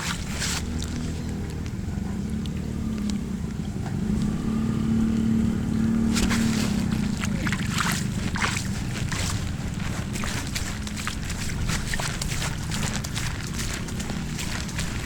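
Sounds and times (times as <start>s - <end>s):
water splashing and gurgling: 0.0s - 15.0s.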